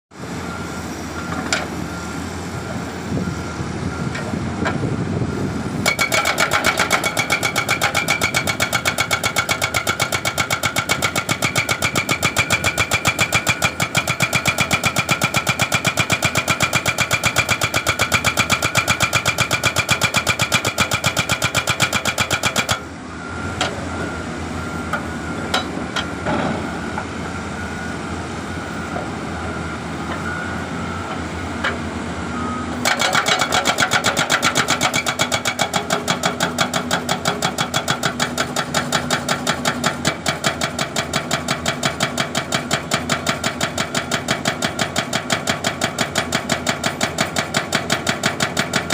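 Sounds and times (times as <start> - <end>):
excavator engine running: 0.2 - 48.9
hydraulic breaker hammering: 5.8 - 22.8, 32.8 - 48.9.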